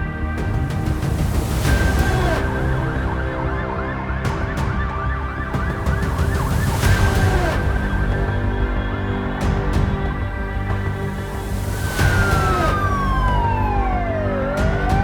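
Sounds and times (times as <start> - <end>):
background music: 0.0 - 15.0
siren yelping: 12.1 - 15.0.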